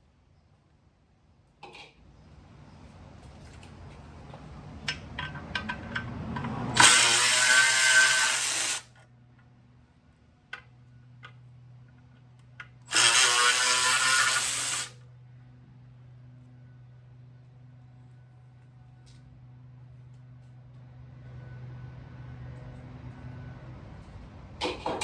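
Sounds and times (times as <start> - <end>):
electric ratchet spinning bolts: 6.7 - 8.9, 12.9 - 15.0.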